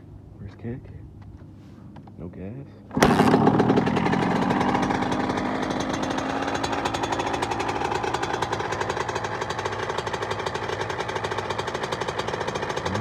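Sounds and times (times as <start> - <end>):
dirt bike engine idling: 2.9 - 13.0.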